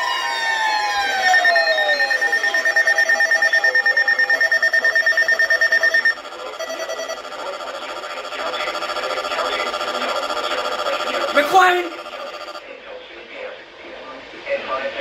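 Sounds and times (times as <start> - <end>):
weather alert radio beeping: 1.0 - 12.6.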